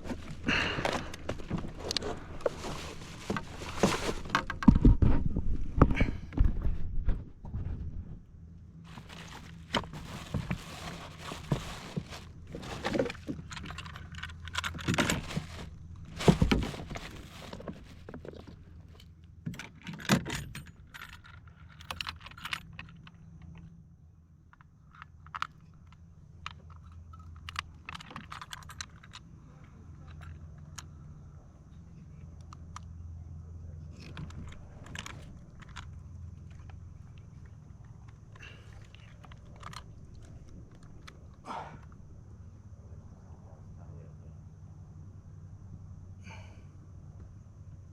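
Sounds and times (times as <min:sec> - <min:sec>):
rustling: 0:00.0 - 0:05.4, 0:08.8 - 0:19.1
low steady rumble: 0:00.0 - 0:47.9
small clicks and crackles: 0:34.0 - 0:42.0.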